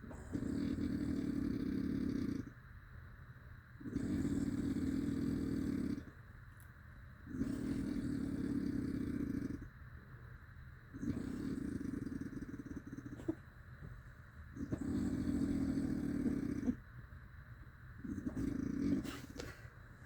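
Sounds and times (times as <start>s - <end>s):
loud snoring: 0.0s - 2.5s, 3.8s - 6.1s, 7.3s - 9.7s, 11.0s - 13.4s, 14.6s - 16.8s, 18.0s - 19.4s
quiet breaths: 0.0s - 20.0s.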